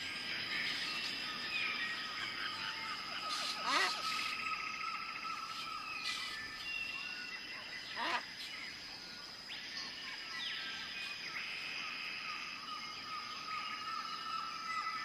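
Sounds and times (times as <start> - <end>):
bird calls: 0.0 - 11.9
insects droning: 0.0 - 15.0.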